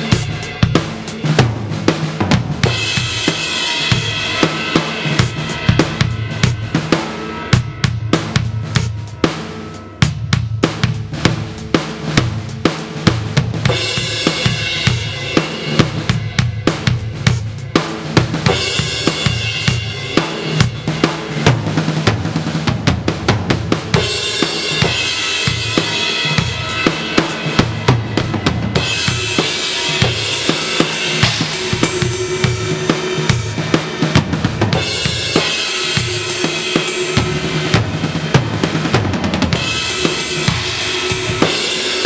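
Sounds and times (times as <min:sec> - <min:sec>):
ringing cymbal wash: 0:02.6 - 0:11.0, 0:13.7 - 0:21.6, 0:23.9 - 0:42.0
electronic kick and snare beat: 0:10.0 - 0:42.0.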